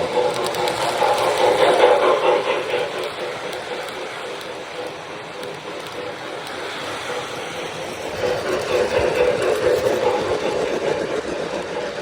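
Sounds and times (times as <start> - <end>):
model train running on track: 0.0 - 12.0.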